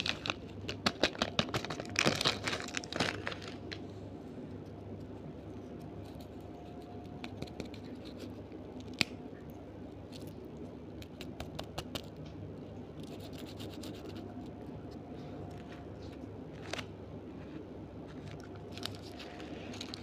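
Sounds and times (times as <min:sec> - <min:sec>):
packaging clicks and crackles: 0:00.0 - 0:03.9, 0:18.1 - 0:20.0
low hum: 0:00.0 - 0:20.0.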